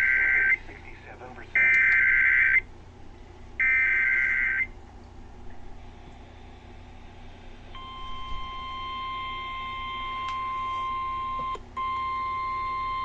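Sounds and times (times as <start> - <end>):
faint radio hiss: 0.1 - 1.9.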